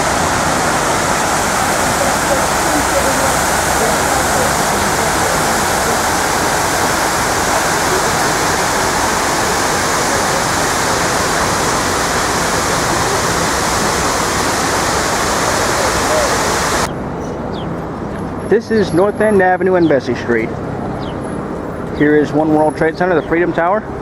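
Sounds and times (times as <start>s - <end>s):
waterfall rushing: 0.0s - 16.9s.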